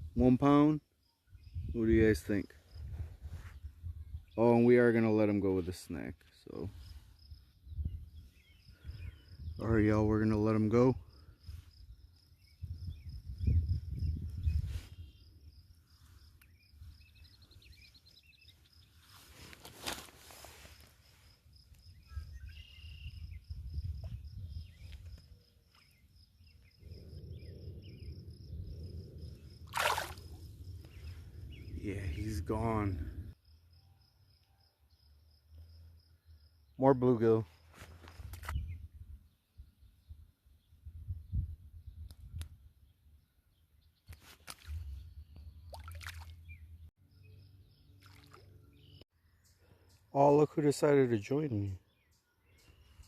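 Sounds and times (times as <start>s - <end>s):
insect chirping: 0.0s - 4.4s, 5.9s - 36.8s, 44.7s - 53.0s
low wind-like rumble: 1.3s - 4.4s, 6.8s - 10.3s, 11.0s - 17.8s, 21.9s - 25.5s, 26.2s - 33.4s, 38.5s - 42.9s
rustles: 15.8s - 21.8s, 37.5s - 38.6s
low rumble: 26.8s - 29.7s.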